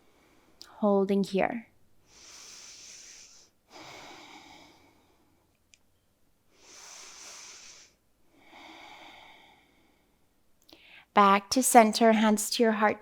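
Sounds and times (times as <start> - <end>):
person breathing deeply: 2.0 - 5.4, 6.5 - 11.1.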